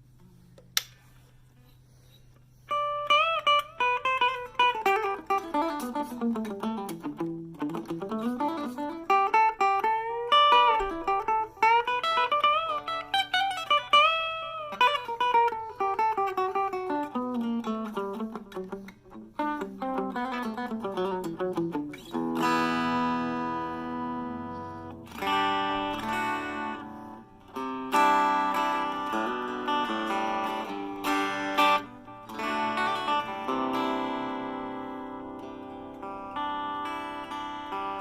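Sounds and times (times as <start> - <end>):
amp hum: 0.0 - 38.0
electric guitar single-note runs: 19.4 - 38.0.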